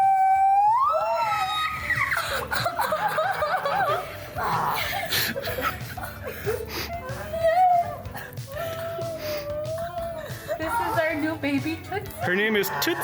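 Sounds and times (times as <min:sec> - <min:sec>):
high-pitched squeal of delight: 0:00.0 - 0:02.2
excited wavering cries: 0:00.0 - 0:05.2, 0:06.7 - 0:11.6, 0:12.2 - 0:13.0
laughter: 0:02.0 - 0:09.1.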